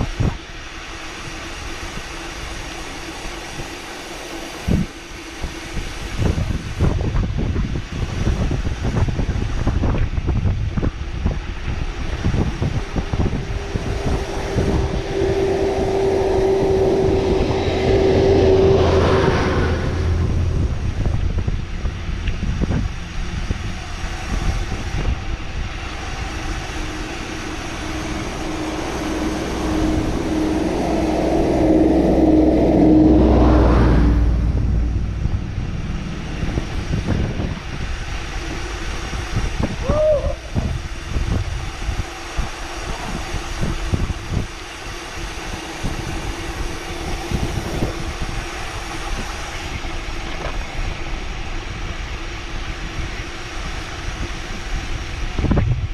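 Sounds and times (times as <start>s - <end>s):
steady hum: 0.0s - 55.9s
steady low rumble: 0.0s - 55.9s
wind rushing over microphone: 0.0s - 55.9s.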